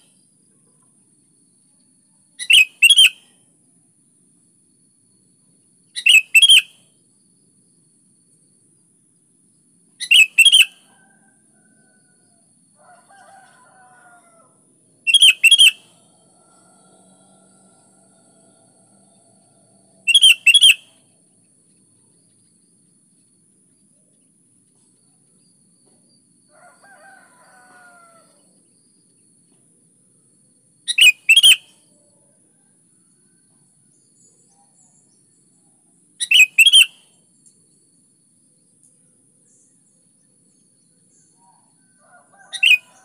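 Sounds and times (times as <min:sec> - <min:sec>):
bulbul calling: 0:10.0 - 0:10.8, 0:15.1 - 0:16.0, 0:20.1 - 0:21.0, 0:30.9 - 0:31.6, 0:36.2 - 0:37.0.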